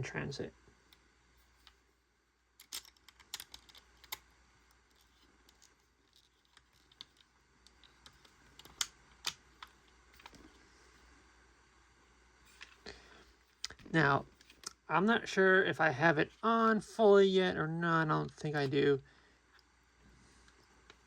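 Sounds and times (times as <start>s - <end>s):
plastic toy parts clicking: 2.6s - 4.2s, 4.9s - 10.4s.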